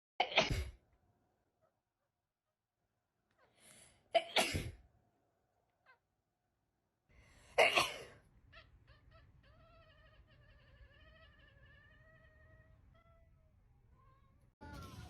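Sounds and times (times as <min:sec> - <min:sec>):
long wavering animal call: 0:08.5 - 0:14.2
brief animal calls: 0:08.5 - 0:15.0.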